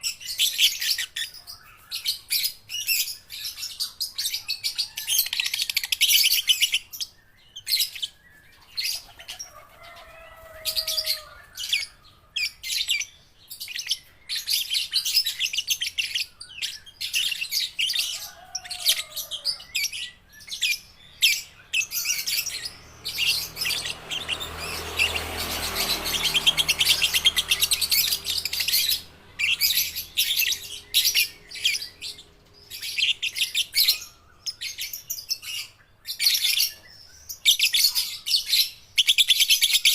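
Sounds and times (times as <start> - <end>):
lovebirds chattering: 0.0 - 39.9.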